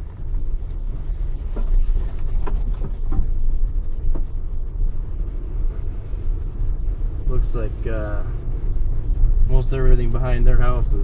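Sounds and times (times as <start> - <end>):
car road and engine rumble: 0.0 - 11.0.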